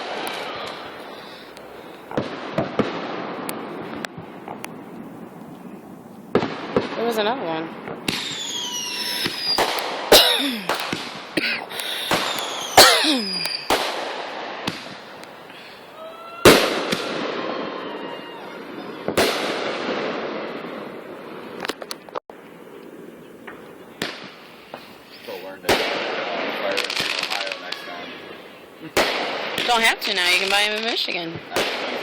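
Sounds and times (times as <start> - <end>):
small firework pops: 0.0 - 4.8, 7.8 - 15.4, 16.5 - 17.3, 21.6 - 22.2, 23.4 - 28.0, 28.9 - 32.0
firework bangs: 0.0 - 22.2, 22.8 - 32.0
firework crackle: 0.0 - 32.0
firework whistles falling in pitch: 8.1 - 9.8, 12.1 - 13.9.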